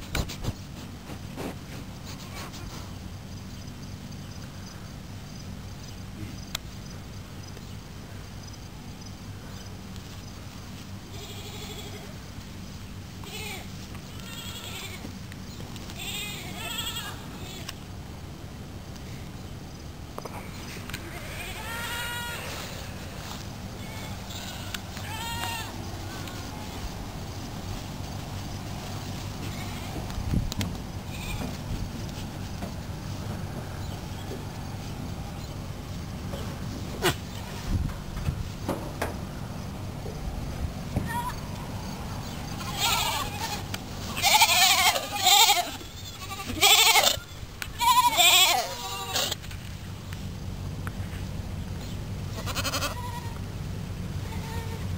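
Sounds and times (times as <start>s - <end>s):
goat bleating: 11.1s - 12.2s, 13.2s - 15.1s, 15.9s - 17.8s, 20.9s - 26.9s, 29.4s - 30.1s, 31.1s - 31.6s, 42.5s - 49.4s, 52.3s - 53.4s, 54.2s - 54.9s.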